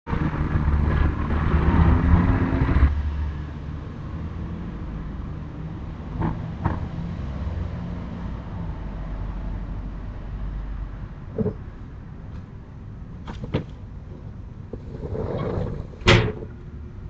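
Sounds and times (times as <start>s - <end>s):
sliding window rumbling along track: 0.1s - 3.0s, 11.3s - 11.7s, 13.2s - 16.8s.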